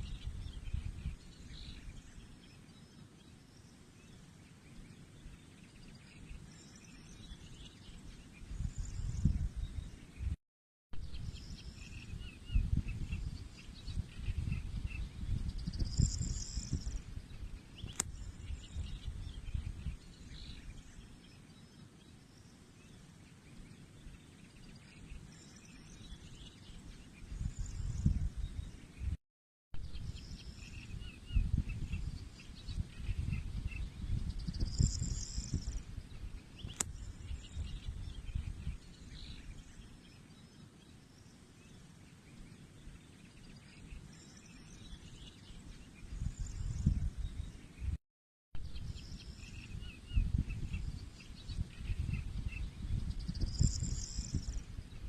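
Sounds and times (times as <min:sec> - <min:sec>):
birds chirping: 0:11.1 - 0:29.2, 0:29.9 - 0:47.9, 0:48.7 - 0:55.0
sharp click: 0:17.8 - 0:18.1, 0:36.7 - 0:37.0.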